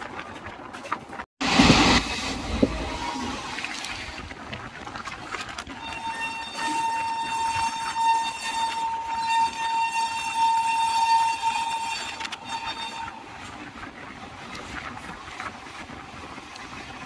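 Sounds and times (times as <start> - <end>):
moving train rolling: 1.4 - 17.0
locomotive horn: 2.5 - 4.0, 5.7 - 13.7.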